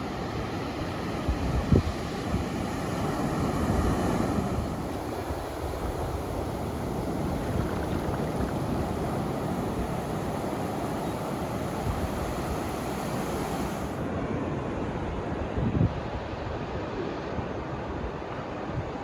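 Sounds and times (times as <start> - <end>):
wind buffeting microphone: 0.0 - 14.0
ocean surf washing onto beach: 0.0 - 17.3.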